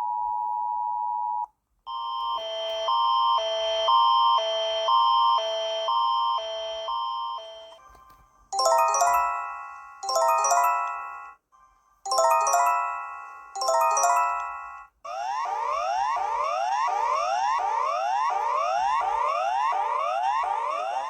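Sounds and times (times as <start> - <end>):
bell-like alert chime: 8.6 - 11.3, 12.1 - 14.8.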